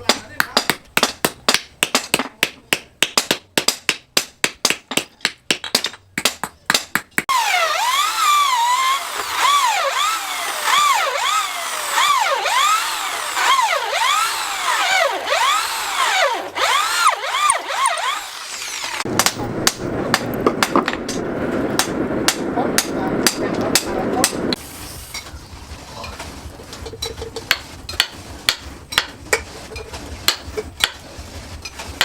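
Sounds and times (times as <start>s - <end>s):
electric drill whining: 7.3s - 19.1s
sharp knocks: 19.0s - 21.2s.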